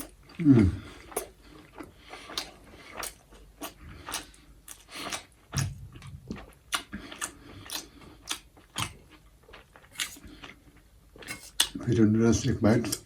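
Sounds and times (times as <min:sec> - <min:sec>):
chewing crisp green onion: 0:00.0 - 0:13.0.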